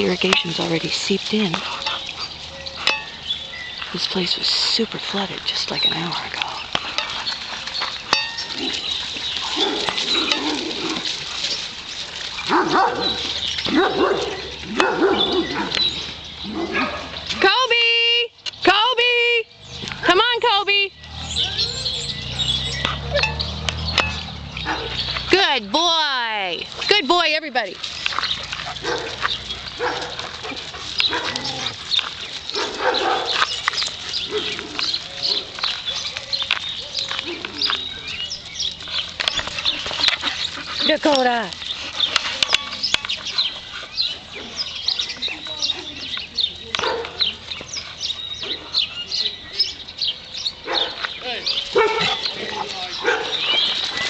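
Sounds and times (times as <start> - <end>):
dogs yipping and whining: 6.6 - 17.3, 21.2 - 25.2, 27.8 - 45.2, 46.8 - 54.0.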